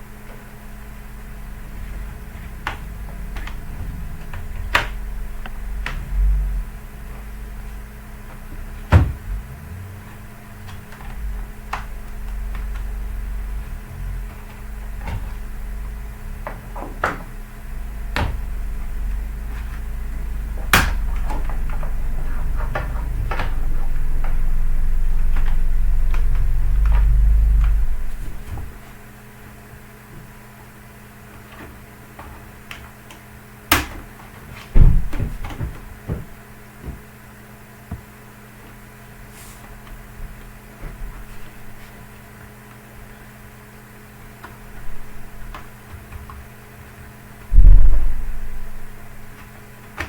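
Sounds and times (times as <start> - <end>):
low handling rumble: 0.0 - 29.2, 34.7 - 37.9, 39.0 - 42.2, 44.6 - 45.8, 47.2 - 49.7
faint steady hum: 0.0 - 50.0.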